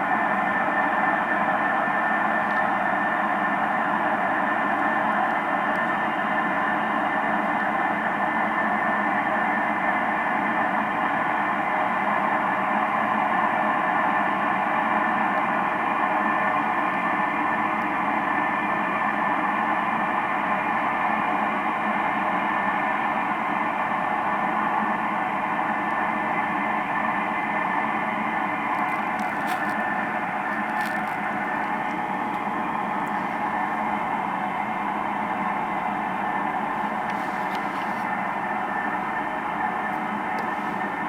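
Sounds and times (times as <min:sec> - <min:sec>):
steady droning hum: 0:23.8 - 0:41.0.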